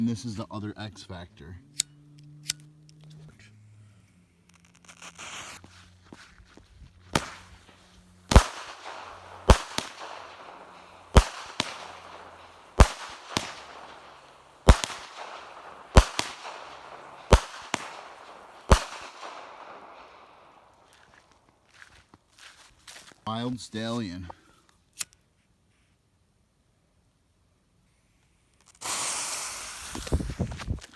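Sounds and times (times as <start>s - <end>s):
firework fuse hiss: 4.5s - 6.1s, 7.1s - 19.1s, 28.7s - 30.9s
firework aerial burst cracks: 4.6s - 5.7s, 7.1s - 20.8s, 28.8s - 30.8s
firework shots: 4.6s - 21.2s, 28.8s - 30.8s.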